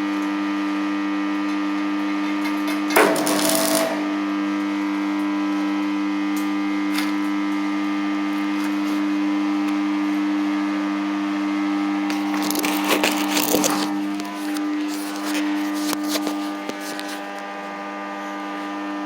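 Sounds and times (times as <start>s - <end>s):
welding machine humming: 0.1s - 18.2s
short clicks and crackles: 3.0s - 4.0s, 12.1s - 17.4s.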